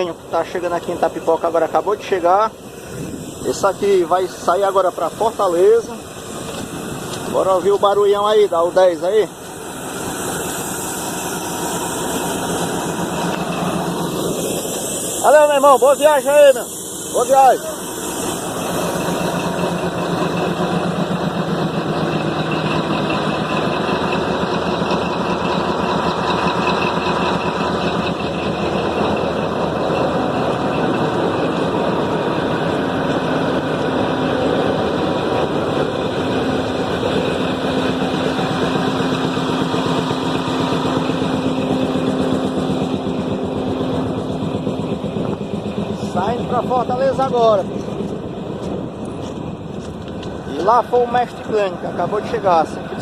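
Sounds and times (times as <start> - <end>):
locomotive diesel engine running: 0.0 - 53.0.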